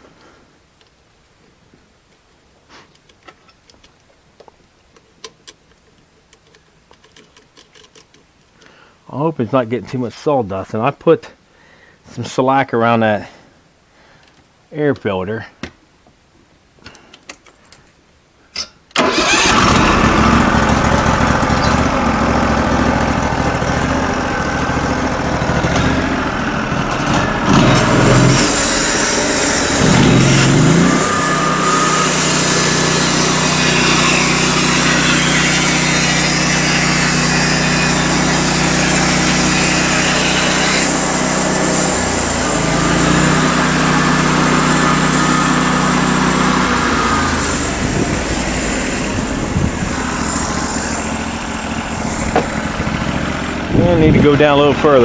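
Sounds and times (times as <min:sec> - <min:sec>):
sawmill engine starting and running: 0:19.0 - 0:55.0.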